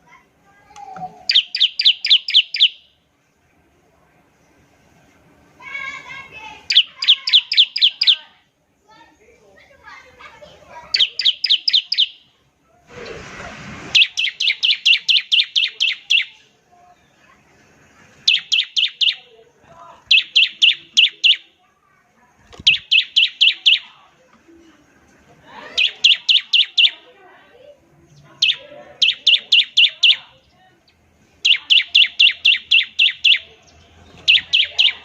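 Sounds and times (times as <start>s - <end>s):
bird singing rapid high notes: 1.3s - 3.0s, 6.7s - 8.3s, 10.9s - 12.3s, 13.9s - 16.5s, 18.2s - 19.3s, 20.1s - 21.6s, 22.6s - 24.0s, 25.7s - 27.1s, 28.1s - 35.0s
brief burst of noise: 12.9s - 14.1s.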